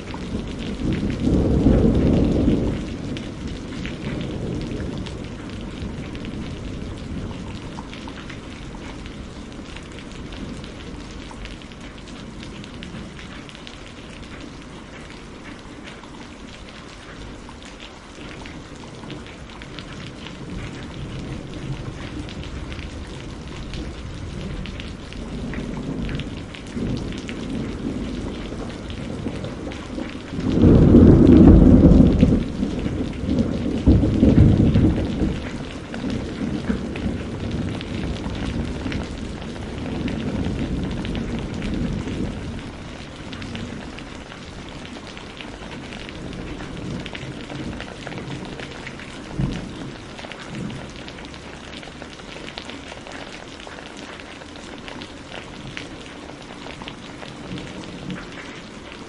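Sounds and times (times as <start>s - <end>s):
low rolling thunder: 0.0s - 15.2s, 18.2s - 52.2s
steady rain: 0.0s - 59.0s
loud thunderclap: 0.1s - 7.6s, 19.9s - 43.9s.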